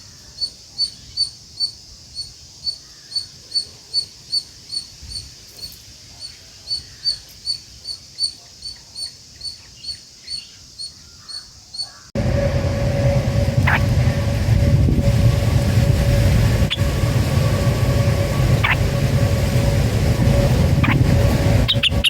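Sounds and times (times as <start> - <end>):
bird chirping: 0.0 - 12.1, 13.6 - 14.0, 16.1 - 22.0
loud rumbling noise with hum: 12.2 - 22.0.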